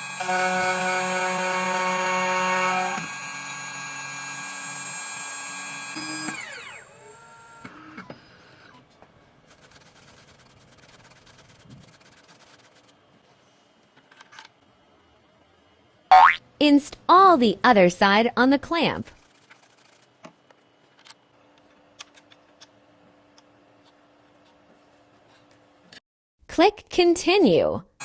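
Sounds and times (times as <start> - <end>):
key cutting machine motor whine: 0.0 - 8.8.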